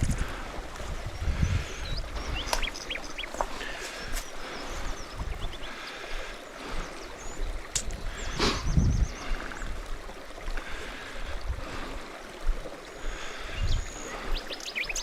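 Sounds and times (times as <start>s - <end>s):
small birds chirping: 0.0s - 9.9s, 12.2s - 15.0s.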